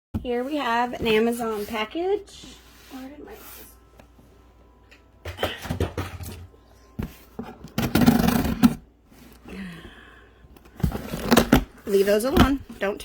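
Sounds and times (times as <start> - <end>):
objects rustling and clattering: 4.9 - 9.5.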